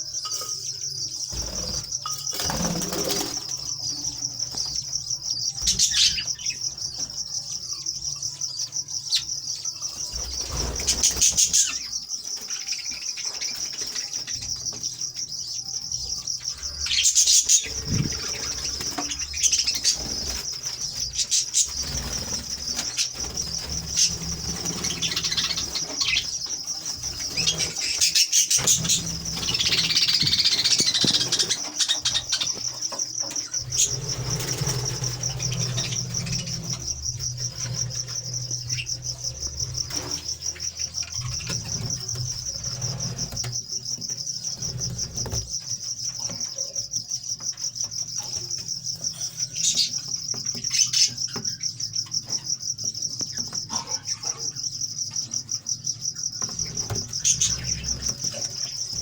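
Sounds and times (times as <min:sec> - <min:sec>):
birds chirring: 0:00.0 - 0:59.0
sharp bird chirps: 0:00.0 - 0:59.0
birds rustling: 0:16.6 - 0:46.1, 0:56.3 - 0:59.0.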